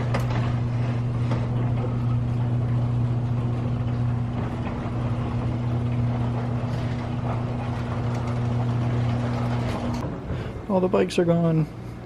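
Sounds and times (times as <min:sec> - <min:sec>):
low mechanical drone: 0:00.0 - 0:12.0.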